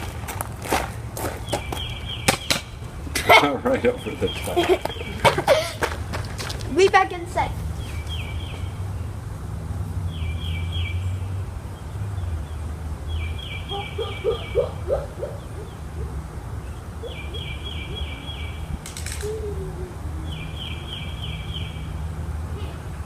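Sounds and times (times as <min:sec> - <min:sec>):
sharp click: 0:18.8 - 0:19.3.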